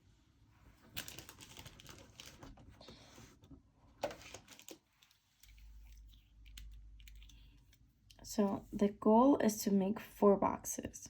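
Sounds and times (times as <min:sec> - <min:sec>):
paper rustling: 0:00.8 - 0:03.4, 0:04.0 - 0:06.3.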